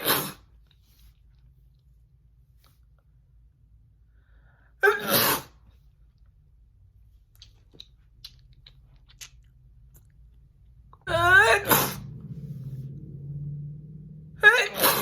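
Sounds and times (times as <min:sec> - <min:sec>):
woman sneezing: 0:04.8 - 0:05.6, 0:14.5 - 0:15.0.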